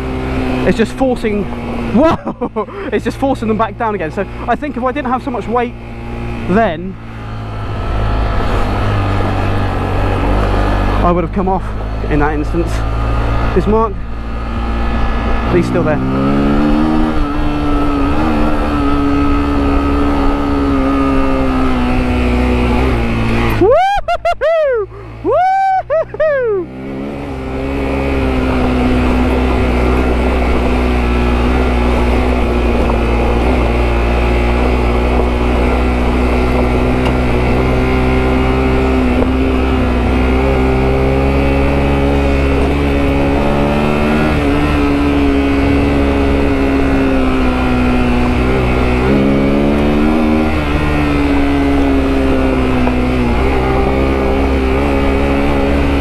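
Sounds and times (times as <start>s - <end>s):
motorcycle engine revving: 0.0s - 56.0s
wind rumble on microphone: 27.6s - 41.7s.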